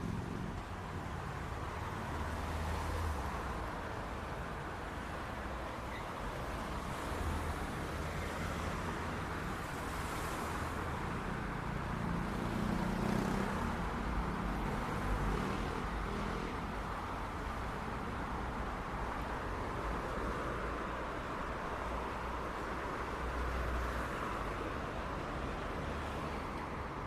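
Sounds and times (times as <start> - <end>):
street traffic rumble: 0.0 - 27.0.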